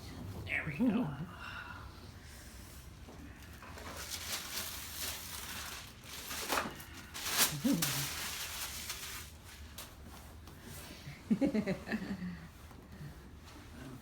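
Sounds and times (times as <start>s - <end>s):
rustling and shuffling on table: 2.9s - 14.0s.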